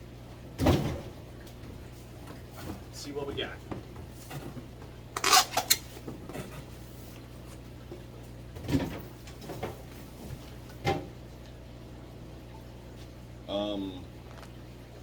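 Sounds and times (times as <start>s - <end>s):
sharp clicks and scrapes: 5.2s - 5.8s.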